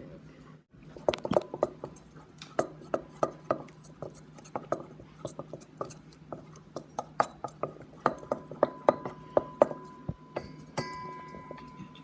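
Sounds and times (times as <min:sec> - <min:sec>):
spoon clinking against a bowl: 0:06.8 - 0:12.0.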